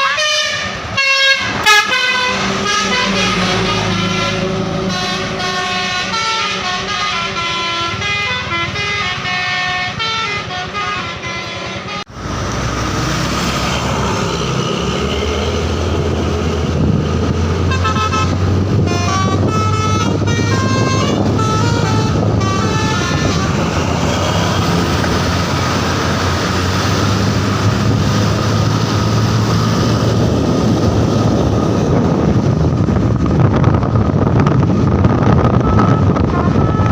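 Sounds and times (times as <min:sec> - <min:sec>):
bus horn melody: 0:00.0 - 0:12.1, 0:17.6 - 0:26.0, 0:35.3 - 0:36.9
bus engine running: 0:00.0 - 0:36.9.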